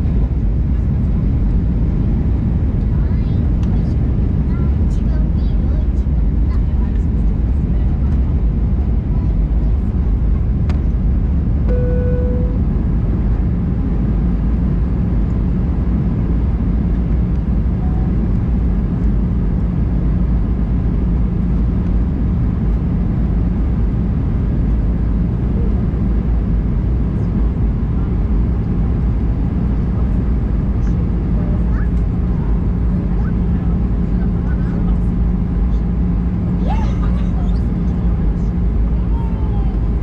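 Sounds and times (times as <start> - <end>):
airflow over fuselage: 0.0 - 40.0
jet engine cabin rumble: 0.0 - 40.0
short steady tone: 11.7 - 12.6.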